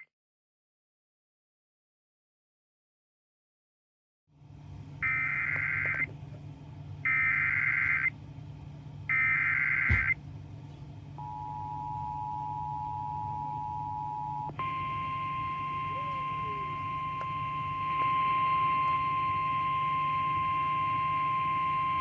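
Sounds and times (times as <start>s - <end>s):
low hum: 4.4s - 22.0s
two-tone attention signal: 11.2s - 22.0s.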